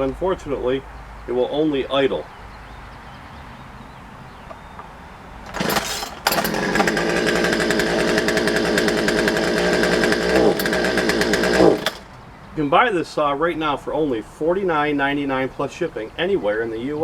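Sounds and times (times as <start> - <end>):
chainsaw engine idling: 4.5 - 12.3.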